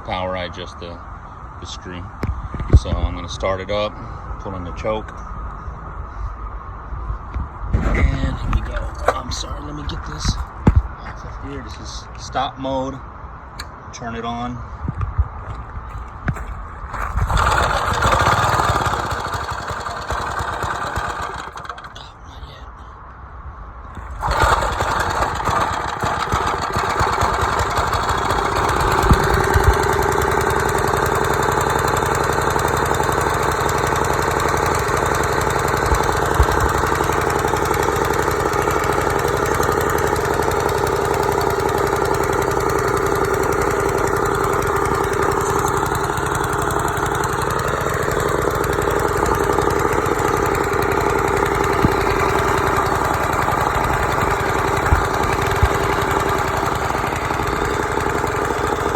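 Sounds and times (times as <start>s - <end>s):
lawn mower engine idling: 7.8s - 10.8s, 16.3s - 22.1s, 23.9s - 58.9s.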